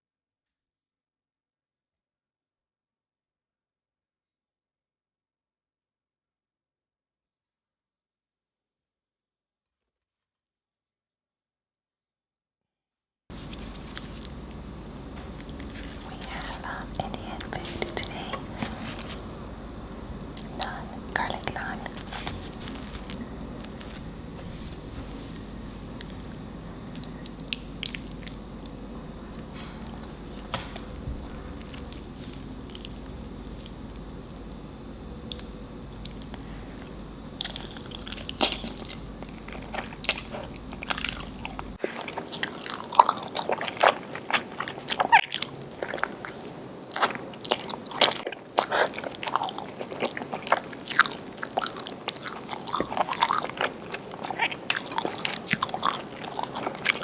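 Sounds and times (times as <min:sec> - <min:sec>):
low hum: 0:13.3 - 0:42.9
person chewing food: 0:13.3 - 0:57.0.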